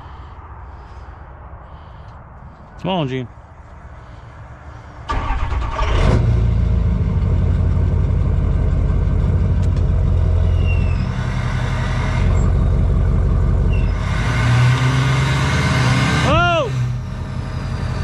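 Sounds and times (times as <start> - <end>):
truck engine starting: 4.1 - 18.0.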